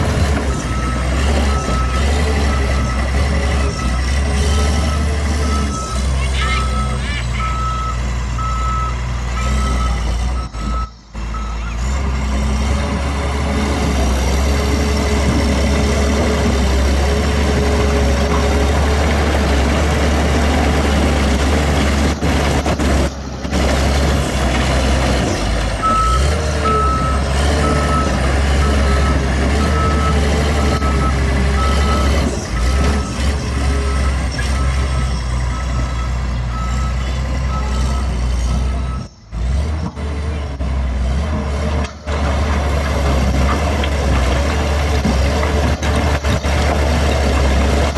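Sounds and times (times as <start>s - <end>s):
diesel engine low rumble: 0.0s - 47.9s
reverse alarm beeping: 25.8s - 33.2s.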